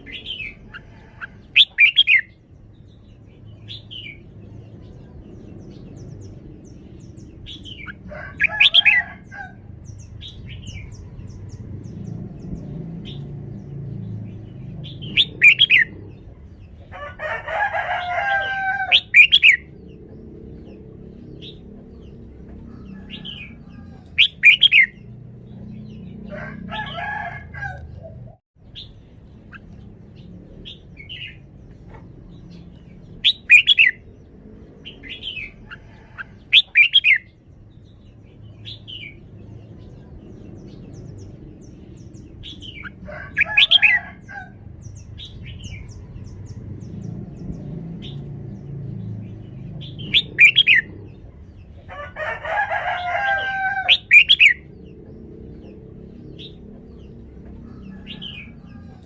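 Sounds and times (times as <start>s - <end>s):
longer lower bird calls: 0.0s - 2.4s, 17.5s - 34.0s, 49.6s - 51.2s
low background rumble: 2.3s - 36.6s, 37.2s - 59.0s.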